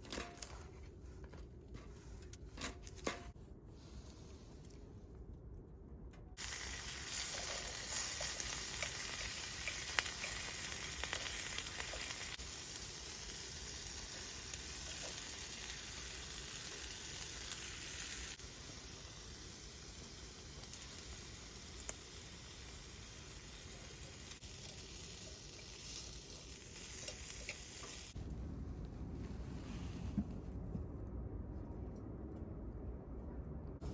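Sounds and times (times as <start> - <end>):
food sizzling in a pan: 6.4 - 28.2.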